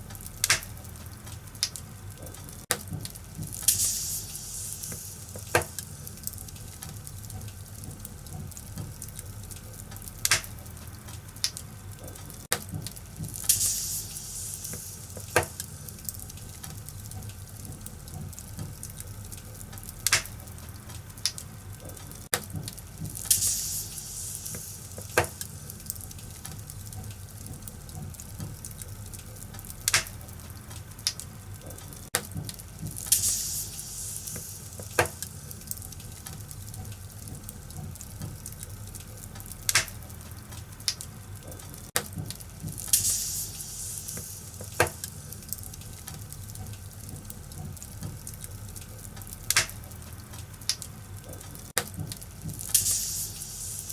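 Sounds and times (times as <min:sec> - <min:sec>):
fire hissing: 0:00.0 - 0:53.9
sharp pops of fire: 0:00.0 - 0:53.9
wood fire crackling: 0:00.0 - 0:53.9.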